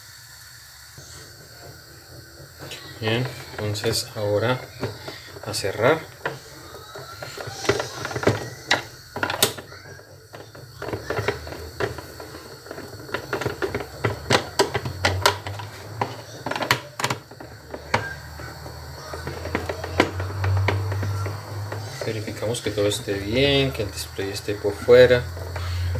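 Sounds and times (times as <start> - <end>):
plastic parts clicking and knocking: 1.0 - 25.9.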